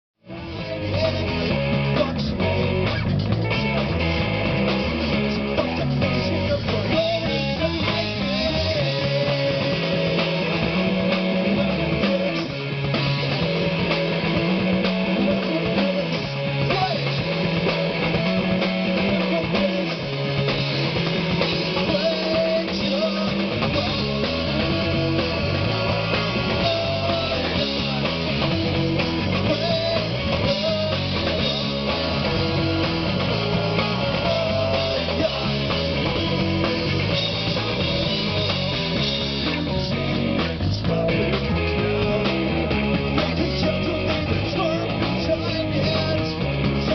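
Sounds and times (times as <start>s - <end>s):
bass line: 0.2s - 46.9s
drum kit: 0.2s - 46.9s
electric guitar: 0.2s - 46.9s.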